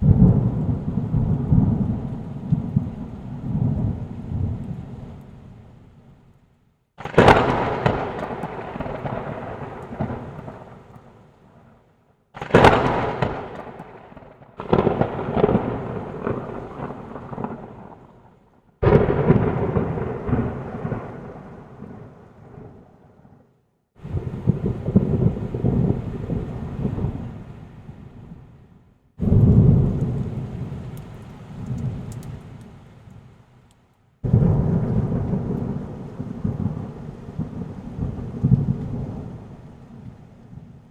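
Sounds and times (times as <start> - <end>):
thunder claps: 0.0 - 4.9, 7.0 - 11.2, 12.4 - 18.2, 18.8 - 23.3, 24.0 - 28.0, 29.2 - 32.7, 34.2 - 39.4.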